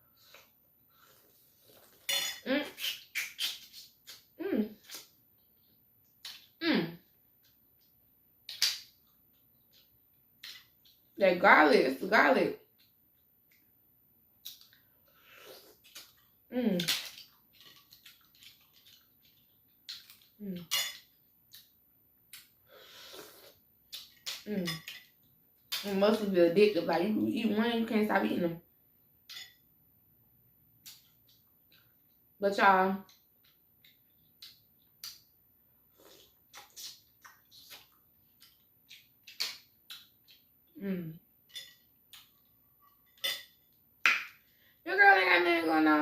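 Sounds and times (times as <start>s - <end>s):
wet chewing and lip smacks: 15.7s - 16.3s, 36.0s - 40.4s.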